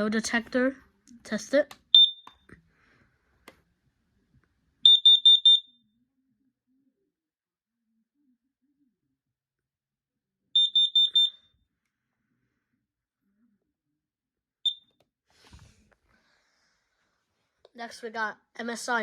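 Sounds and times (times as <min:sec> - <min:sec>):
high-pitched alarm beeps: 0:02.0 - 0:02.4, 0:04.9 - 0:05.8, 0:10.6 - 0:11.5.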